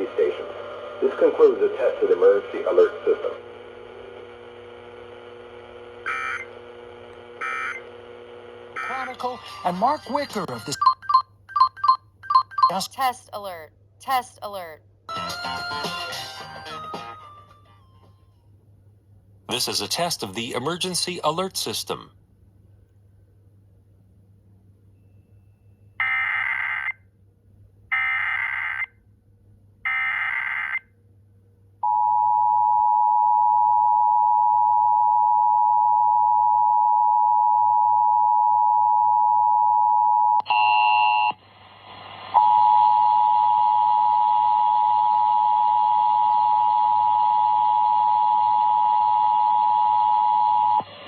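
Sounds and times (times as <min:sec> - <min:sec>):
two-tone attention signal: 0:10.8 - 0:12.8.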